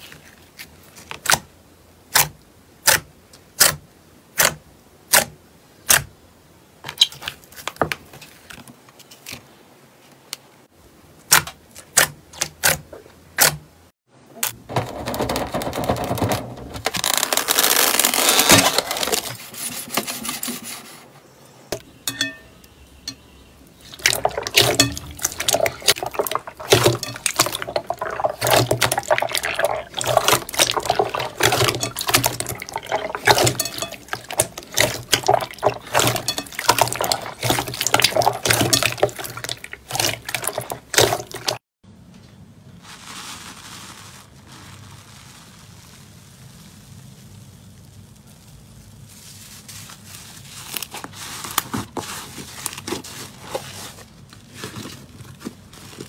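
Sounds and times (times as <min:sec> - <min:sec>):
wet slime squishing: 0:23.7 - 0:41.6.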